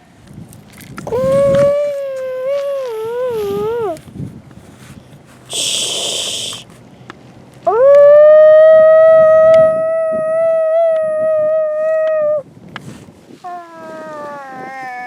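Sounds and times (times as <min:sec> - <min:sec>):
long howl: 0:01.1 - 0:04.0, 0:07.7 - 0:12.4, 0:13.5 - 0:15.0
brief hiss: 0:05.5 - 0:06.7.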